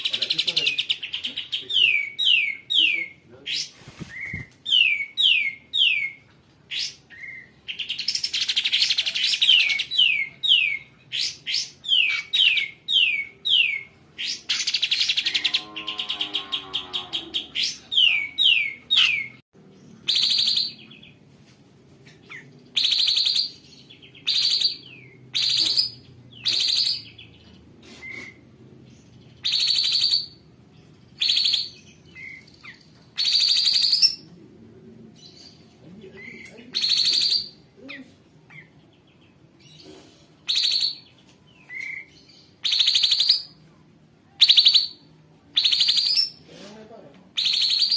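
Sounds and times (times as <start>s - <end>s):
bird singing trills: 4.2s - 21.2s, 22.3s - 28.4s, 29.0s - 34.2s.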